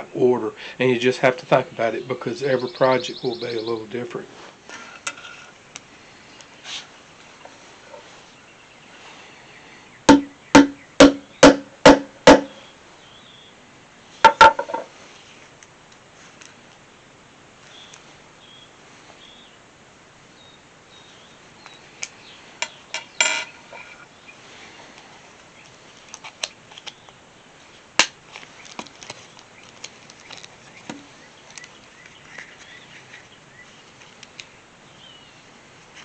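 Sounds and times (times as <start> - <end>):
faint bird chirps: 17.7 - 19.6.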